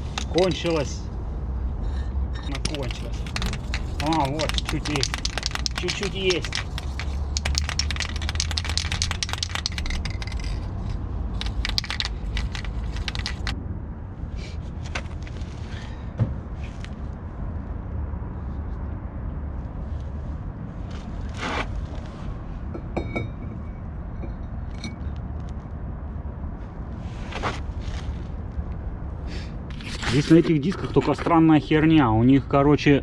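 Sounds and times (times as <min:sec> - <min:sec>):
metal parts clinking and scraping: 0:00.0 - 0:00.9, 0:02.4 - 0:13.6
aerosol can sputtering hiss: 0:02.9 - 0:10.6, 0:11.4 - 0:13.5.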